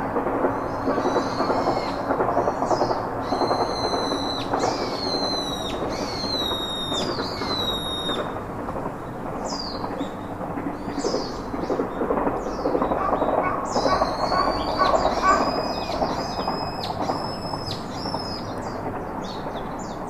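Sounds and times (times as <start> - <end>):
low rushing background noise: 0.0 - 20.0
songbird whistling: 3.2 - 8.3, 13.8 - 18.5.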